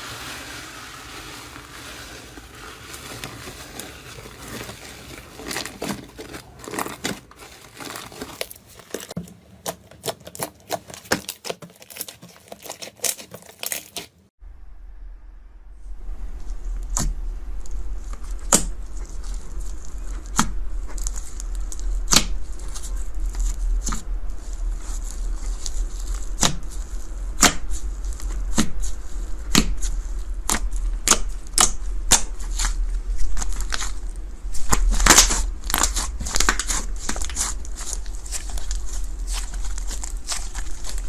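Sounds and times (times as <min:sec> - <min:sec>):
steady low hum: 0:14.4 - 0:41.0
slime crackling and popping: 0:29.4 - 0:41.0.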